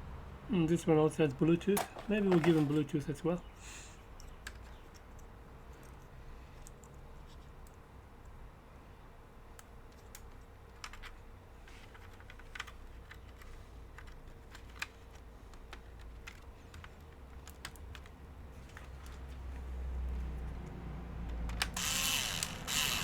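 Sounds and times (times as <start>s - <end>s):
small laptop parts clicking: 4.2s - 8.4s, 9.5s - 23.0s.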